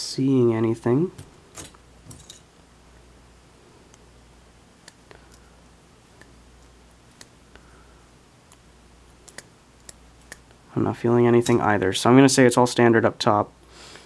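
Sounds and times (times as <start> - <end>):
low steady hum: 0.0 - 14.0
metal tool clicks and taps: 9.3 - 10.5.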